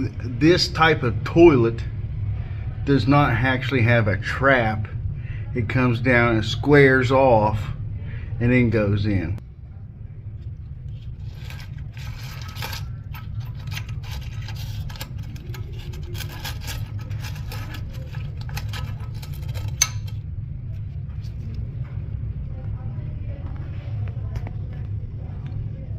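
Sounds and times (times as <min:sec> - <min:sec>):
steady low hum: 0:00.0 - 0:25.9
hard objects scraping and clinking: 0:10.4 - 0:21.6.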